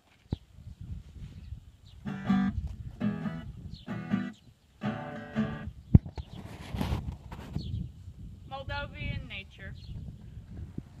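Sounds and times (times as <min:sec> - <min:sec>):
acoustic guitar strumming: 0:02.0 - 0:05.7.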